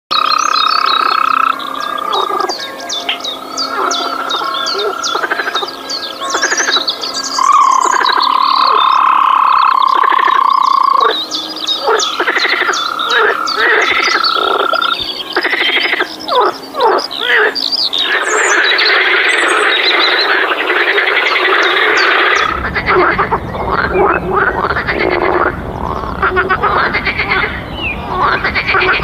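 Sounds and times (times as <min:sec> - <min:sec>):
chorus of many frogs: 0:00.1 - 0:29.0
frogs trilling: 0:00.1 - 0:29.0
frogs croaking in short pulses: 0:07.4 - 0:11.2, 0:11.8 - 0:23.1.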